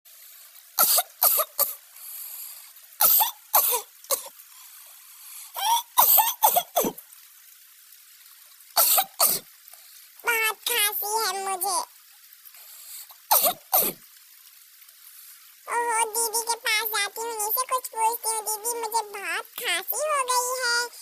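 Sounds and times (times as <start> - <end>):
person coughing: 0.8 - 1.8, 5.6 - 7.0, 8.8 - 9.4, 13.3 - 14.0.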